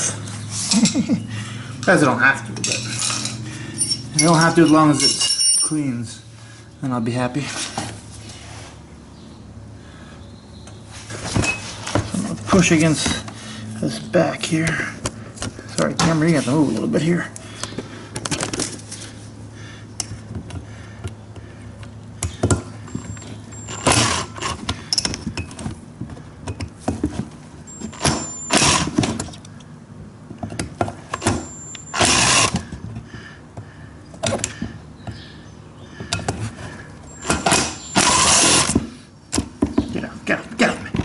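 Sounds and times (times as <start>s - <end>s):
steady low hum: 0.0s - 41.0s
short noisy bursts: 37.2s - 38.8s.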